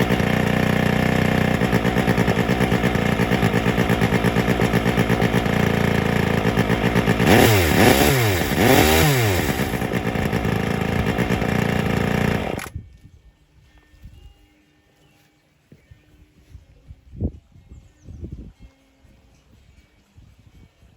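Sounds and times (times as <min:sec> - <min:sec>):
chainsaw engine revving: 0:00.0 - 0:12.7.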